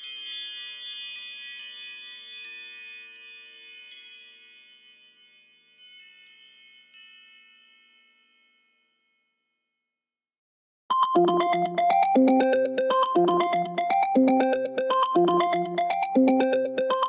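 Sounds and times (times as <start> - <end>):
bell-like chime ringtone: 10.9 - 17.0.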